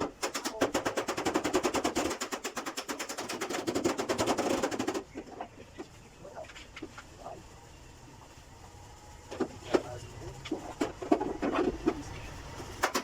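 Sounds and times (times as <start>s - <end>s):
rapid power hammering: 0.0s - 5.1s, 12.8s - 13.0s.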